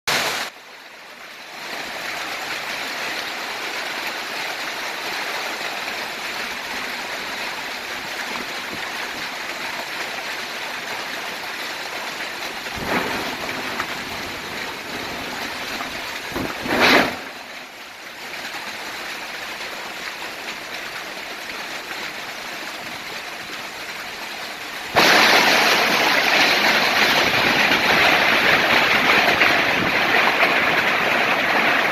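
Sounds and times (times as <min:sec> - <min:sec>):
storm rain: 0:00.1 - 0:31.9
wind rushing: 0:12.6 - 0:17.4.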